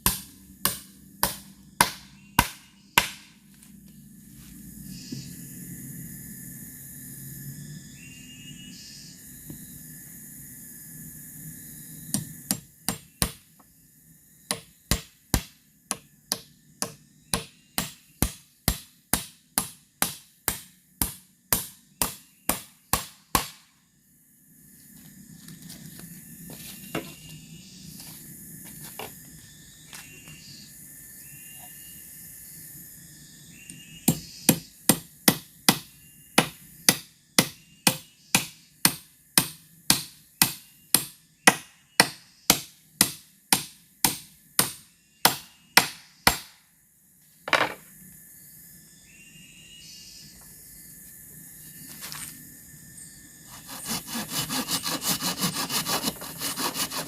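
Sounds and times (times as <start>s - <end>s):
hammer striking bamboo: 0.0s - 3.4s, 12.1s - 13.4s, 14.5s - 23.6s, 34.1s - 46.6s.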